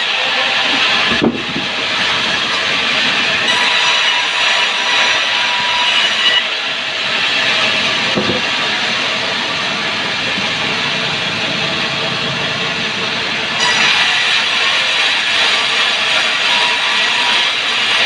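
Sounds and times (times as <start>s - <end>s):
sawmill machinery sawing wood: 0.0s - 18.0s
single knock: 8.2s - 8.4s.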